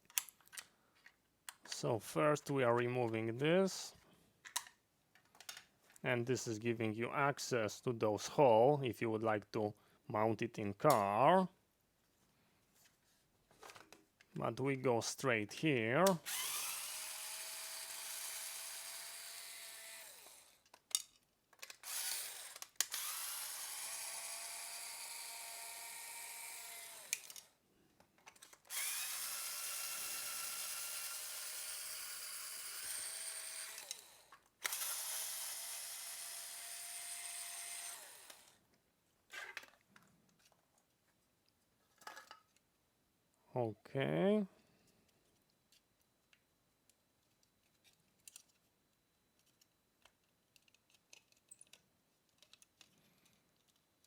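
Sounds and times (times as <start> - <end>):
electric screwdriver motor: 16.2 - 20.6, 21.7 - 27.5, 28.7 - 38.6.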